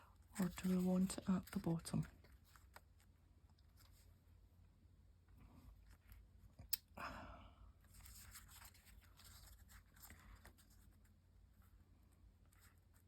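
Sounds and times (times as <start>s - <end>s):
paper rustling: 0.4s - 4.2s, 7.8s - 13.0s.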